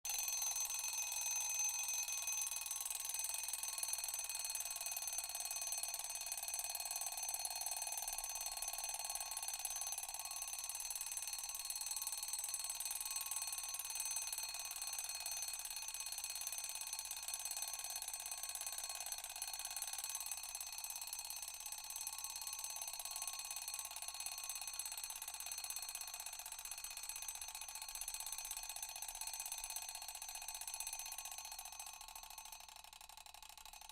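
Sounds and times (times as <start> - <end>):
alarm clock bell ringing: 0.1 - 7.2, 8.1 - 20.2.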